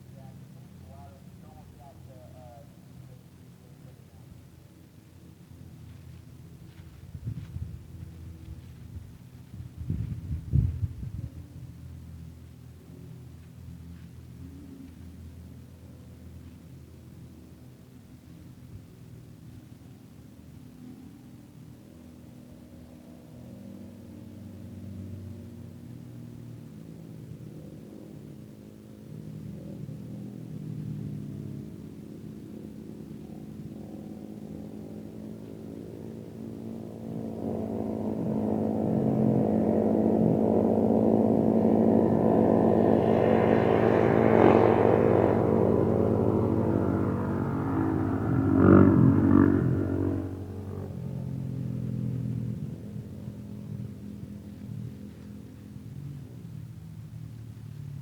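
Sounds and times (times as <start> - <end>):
off-road vehicle engine approaching: 0.0 - 58.0.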